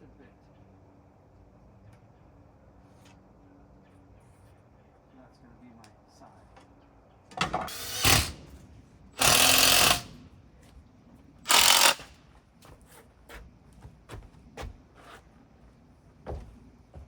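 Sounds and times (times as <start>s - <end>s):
power saw cutting wood: 7.7s - 8.5s, 9.2s - 10.2s, 11.5s - 12.2s.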